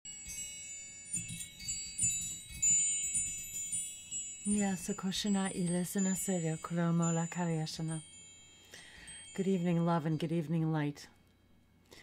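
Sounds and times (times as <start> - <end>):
chimes tinkling: 0.1 - 10.6
person speaking: 4.5 - 8.1, 9.3 - 11.2.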